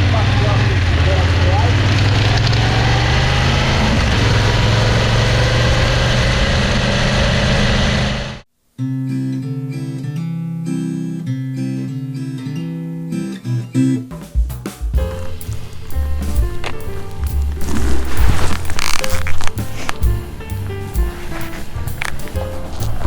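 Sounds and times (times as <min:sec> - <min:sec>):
motorcycle engine running: 0:00.0 - 0:08.4, 0:15.0 - 0:23.0
acoustic guitar music: 0:08.8 - 0:23.0.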